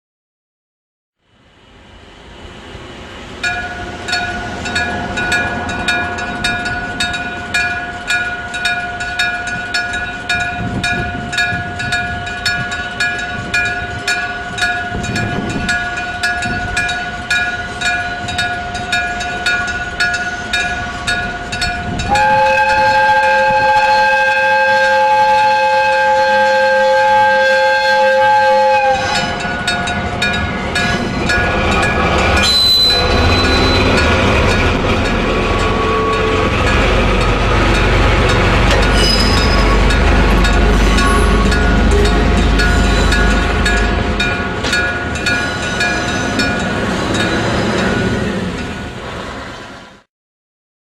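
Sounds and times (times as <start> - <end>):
locomotive horn two-note: 22.0 - 29.2.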